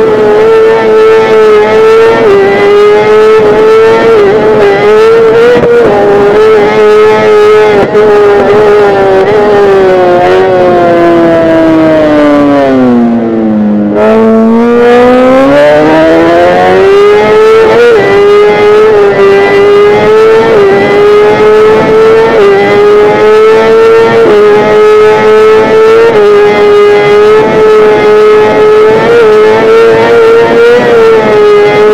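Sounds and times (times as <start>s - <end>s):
motorcycle engine at high revs: 0.0s - 31.9s.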